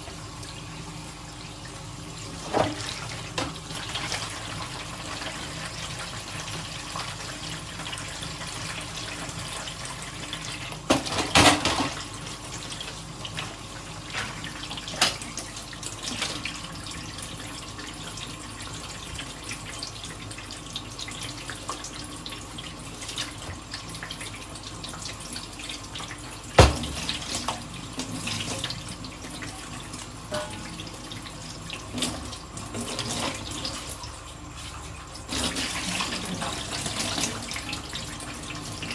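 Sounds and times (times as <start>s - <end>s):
tap running into a sink: 2.4s - 3.6s, 23.4s - 23.8s, 26.0s - 28.8s
dishes clinking and knocking: 30.3s - 30.7s.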